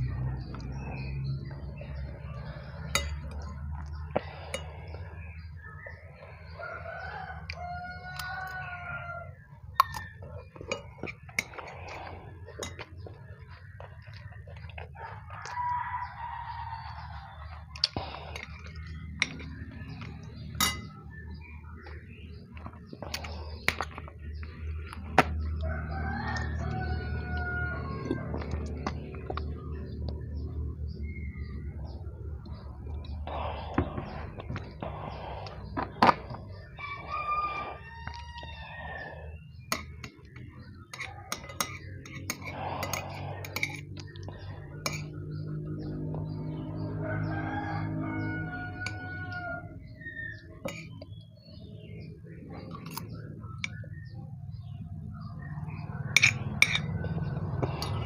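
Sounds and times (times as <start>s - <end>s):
chickens clucking: 0.0s - 58.0s
rooster crowing: 6.5s - 10.2s, 15.0s - 17.4s, 25.6s - 28.7s, 36.6s - 39.3s, 46.2s - 50.3s
utensils clicking on a bowl: 39.7s - 45.3s, 50.6s - 51.0s, 52.7s - 53.8s, 56.1s - 58.0s.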